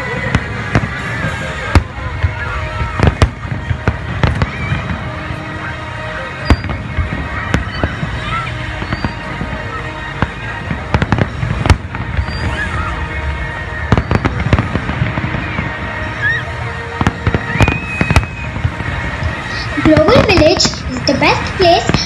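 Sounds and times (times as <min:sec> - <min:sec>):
background music: 0:00.0 - 0:22.0
fireworks bangs and crackles: 0:00.0 - 0:22.0.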